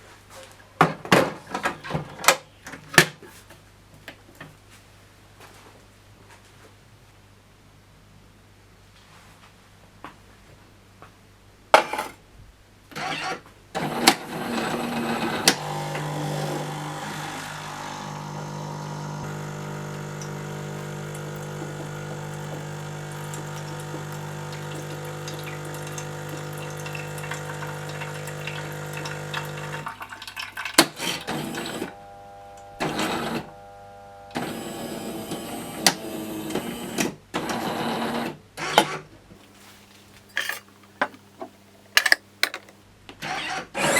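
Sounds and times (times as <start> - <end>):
espresso machine motor hum: 13.8 - 30.0, 31.0 - 36.5, 42.0 - 42.7
espresso machine clicks: 42.0 - 42.8.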